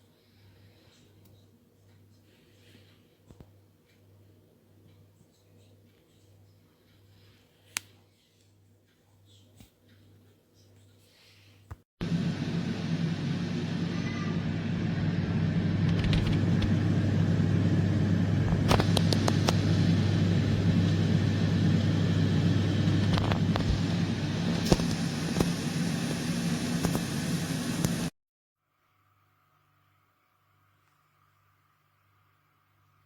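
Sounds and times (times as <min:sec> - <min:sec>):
machine hum: 0:12.0 - 0:28.1
sharp clicks: 0:18.6 - 0:19.8.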